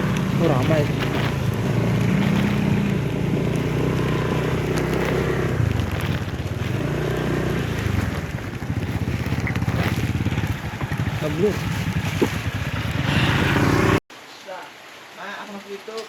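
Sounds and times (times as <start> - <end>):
motorcycle engine running: 0.0 - 14.0.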